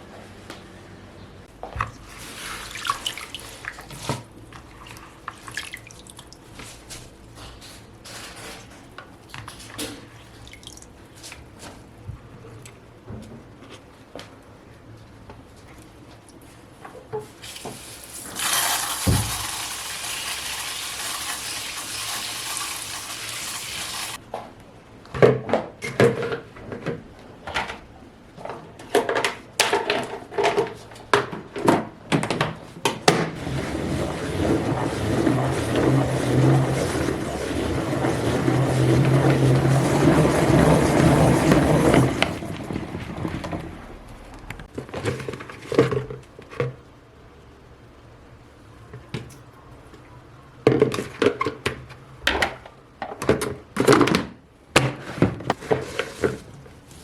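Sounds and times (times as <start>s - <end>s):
water running: 1.9s - 6.5s, 17.4s - 24.2s, 33.4s - 42.4s.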